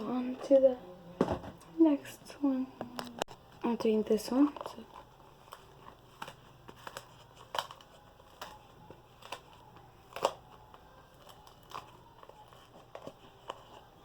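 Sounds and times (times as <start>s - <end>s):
slime crust crackling: 3.7s - 14.0s.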